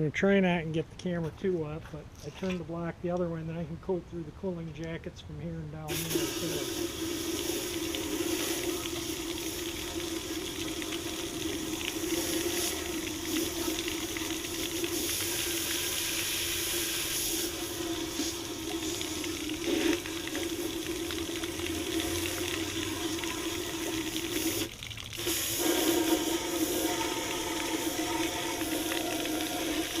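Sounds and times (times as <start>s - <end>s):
pressure washer spraying water: 5.9s - 30.0s
steady hum: 25.2s - 30.0s.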